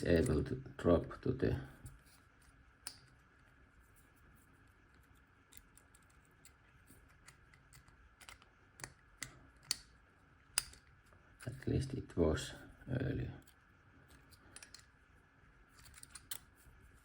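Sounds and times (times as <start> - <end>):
small metal lock parts clicking: 5.0 - 9.9, 10.5 - 11.6, 14.2 - 14.9, 15.7 - 16.6.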